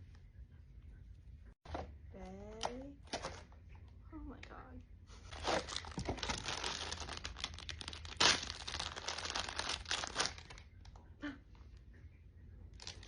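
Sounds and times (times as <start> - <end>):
plastic packaging crinkling: 5.3 - 10.7.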